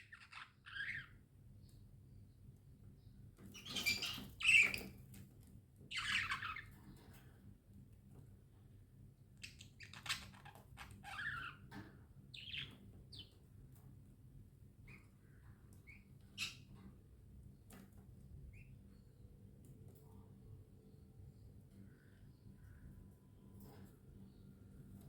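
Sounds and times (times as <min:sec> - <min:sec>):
budgerigars chirping: 0:00.0 - 0:01.1, 0:03.6 - 0:04.9, 0:05.9 - 0:06.7, 0:09.4 - 0:11.6, 0:12.4 - 0:13.4, 0:15.9 - 0:16.7.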